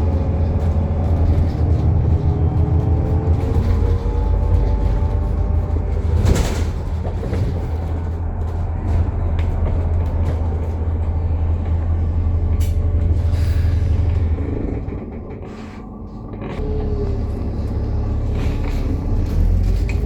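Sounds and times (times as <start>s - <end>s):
bus driving with axle drone: 0.0s - 20.0s.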